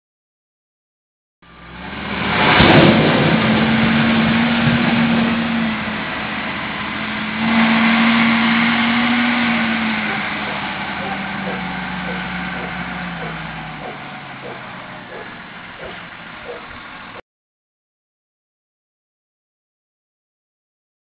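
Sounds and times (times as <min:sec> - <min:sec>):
wheel loader diesel engine: 0:01.4 - 0:17.2.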